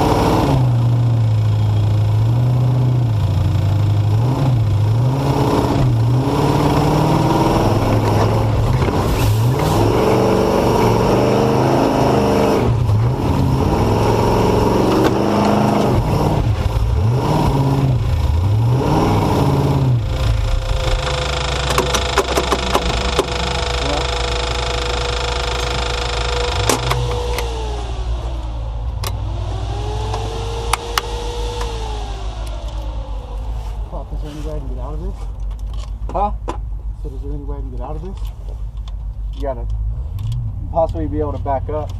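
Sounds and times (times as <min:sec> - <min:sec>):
truck engine revving: 0:00.0 - 0:35.1
sharp clicks: 0:21.0 - 0:27.5.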